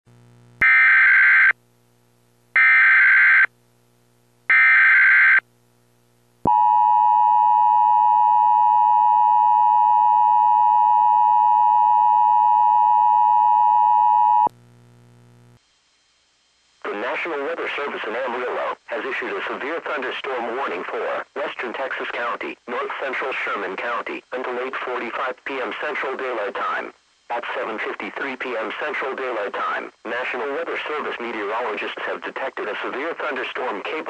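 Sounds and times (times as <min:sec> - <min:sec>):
steady attention tone: 0:06.4 - 0:14.5.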